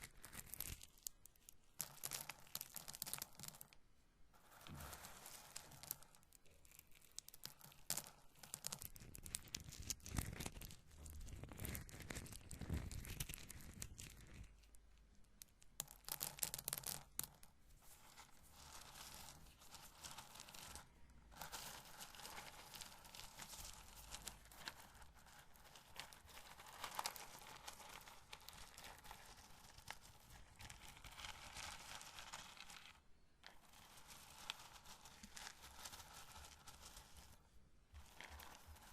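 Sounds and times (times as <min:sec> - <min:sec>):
corn kernels rubbing and rustling: 0:04.4 - 0:06.2, 0:17.9 - 0:37.4, 0:38.0 - 0:38.9.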